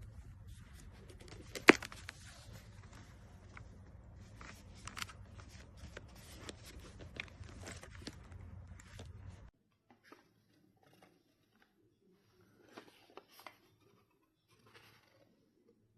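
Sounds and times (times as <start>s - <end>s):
handling clicks and rustles: 0.0s - 9.5s
low steady hum: 0.0s - 9.5s.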